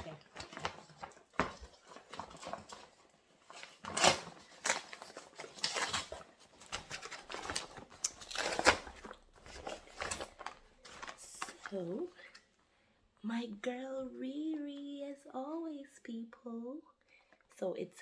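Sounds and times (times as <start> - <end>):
bag rustling and crinkling: 0.0 - 12.1.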